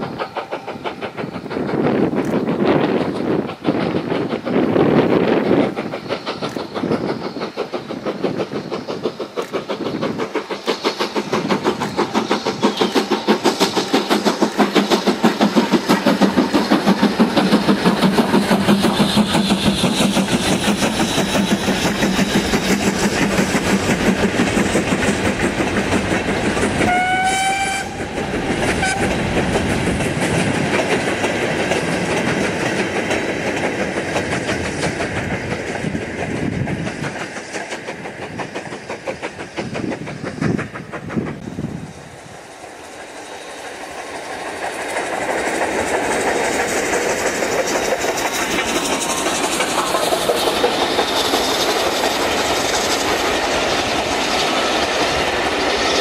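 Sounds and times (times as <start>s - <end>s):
steam locomotive exhaust beats: 0.0s - 56.0s
steam whistle blast: 26.9s - 28.1s, 28.8s - 29.1s.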